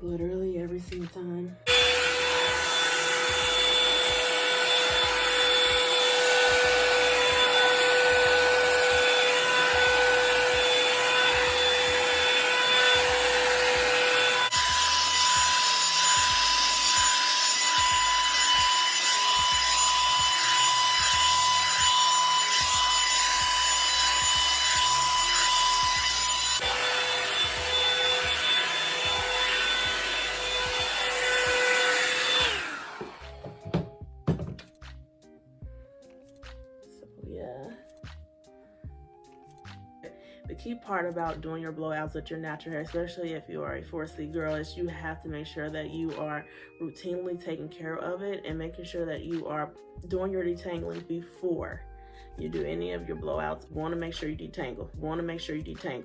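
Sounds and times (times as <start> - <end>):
hair dryer brush blowing: 1.7 - 34.6.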